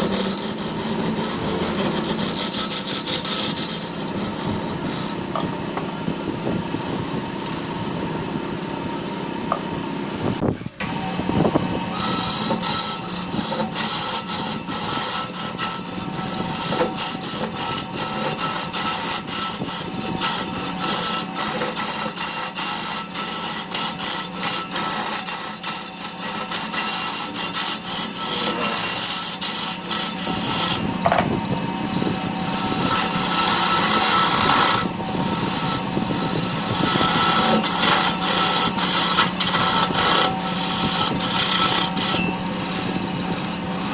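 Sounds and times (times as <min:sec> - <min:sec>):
tool scraping spinning wood: 0:00.0 - 0:43.9
wood lathe humming: 0:00.0 - 0:43.9.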